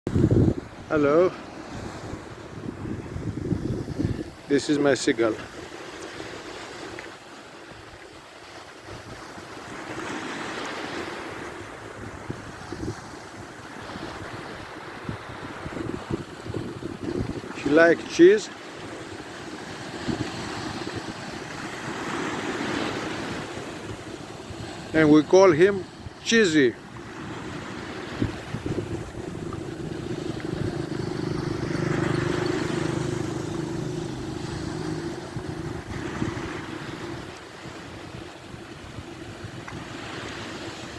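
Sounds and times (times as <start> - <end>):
wind buffeting microphone: 0.1 - 4.5, 7.6 - 18.0, 18.7 - 25.0, 26.8 - 40.9
sea waves washing ashore: 0.1 - 40.9
engine passing by: 28.8 - 37.3.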